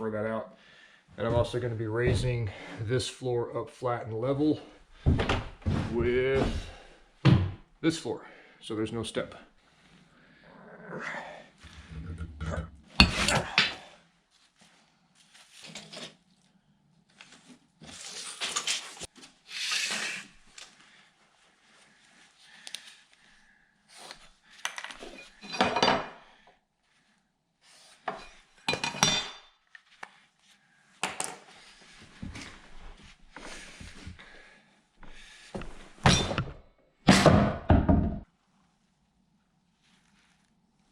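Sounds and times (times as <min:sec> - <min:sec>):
lumber and tools clattering: 0:24.7 - 0:26.2, 0:28.1 - 0:29.6.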